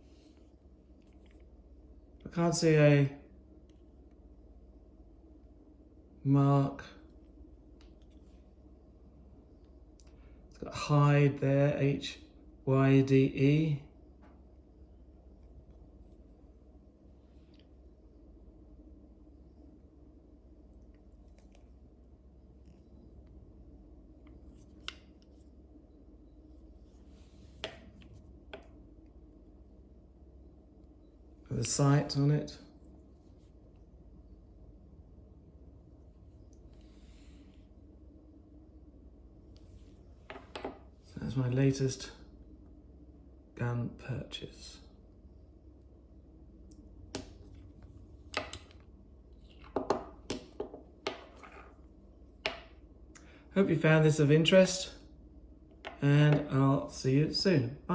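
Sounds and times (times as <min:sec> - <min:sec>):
low steady hum: 0:00.0 - 0:57.9
soft rub: 0:26.4 - 0:28.4.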